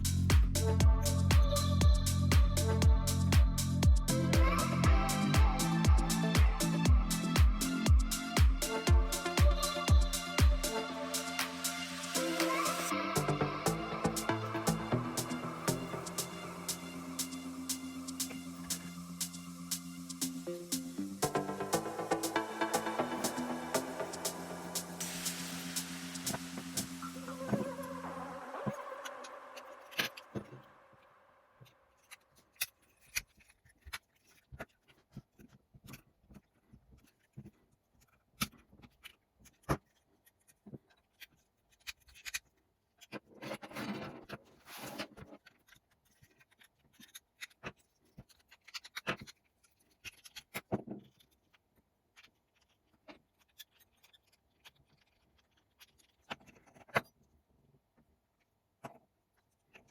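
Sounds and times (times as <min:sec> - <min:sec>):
scrape of small parts: 0:32.0 - 0:51.6.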